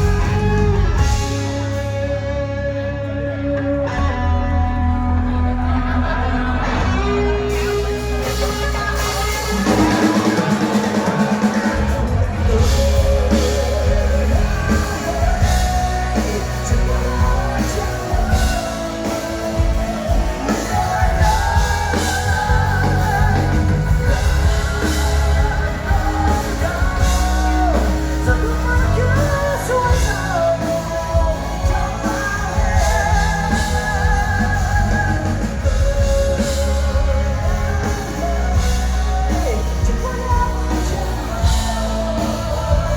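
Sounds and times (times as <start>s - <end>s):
rock band music: 0.0s - 42.9s.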